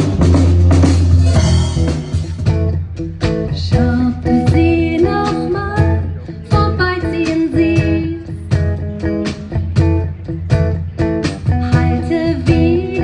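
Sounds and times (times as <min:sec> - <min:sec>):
band playing a song: 0:00.0 - 0:13.0
drum kit steady beat: 0:00.0 - 0:13.0
person singing: 0:03.5 - 0:08.4, 0:11.6 - 0:13.0.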